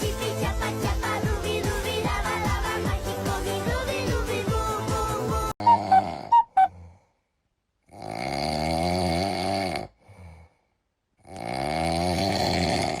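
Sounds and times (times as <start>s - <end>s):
short tones: 5.6s - 6.7s
person snoring: 7.9s - 10.6s, 11.2s - 13.0s.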